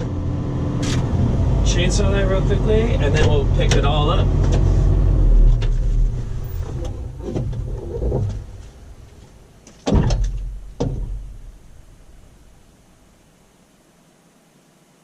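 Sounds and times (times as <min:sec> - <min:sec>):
excavator diesel engine rumbling: 0:00.0 - 0:12.9
cab door thumps: 0:09.7 - 0:11.6.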